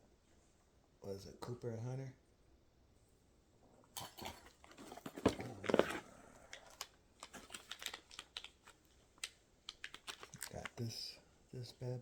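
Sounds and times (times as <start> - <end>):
packaging clicks and rustles: 4.0 - 11.0.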